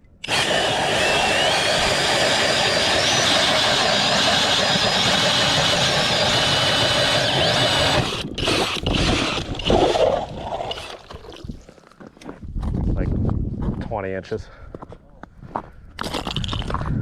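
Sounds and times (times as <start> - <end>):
cordless drill motor whine: 0.2 - 11.2.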